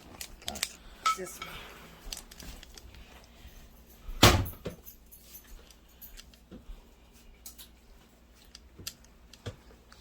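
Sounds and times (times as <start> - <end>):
dishes clicking and clinking: 0.4 - 2.6
loud kitchen clunk: 4.2 - 4.8.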